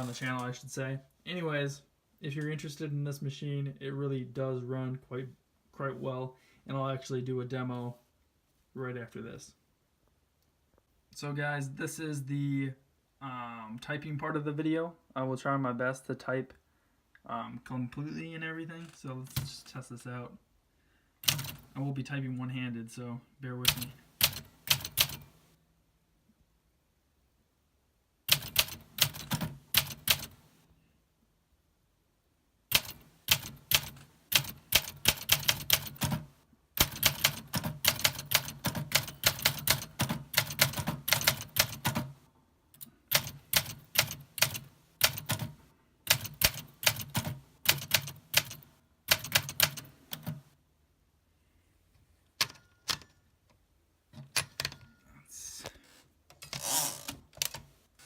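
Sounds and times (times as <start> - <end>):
manual typewriter key strikes: 32.7 - 36.2, 36.8 - 42.1, 46.1 - 50.4.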